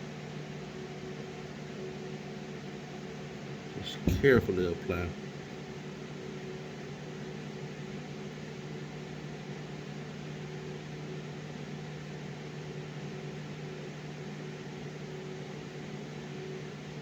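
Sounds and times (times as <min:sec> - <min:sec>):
steady machine hum: 0:00.0 - 0:10.9.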